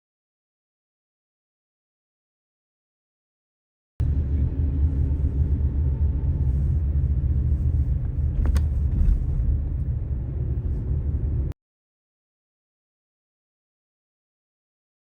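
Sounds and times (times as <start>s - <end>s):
wind buffeting microphone: 4.7s - 11.5s.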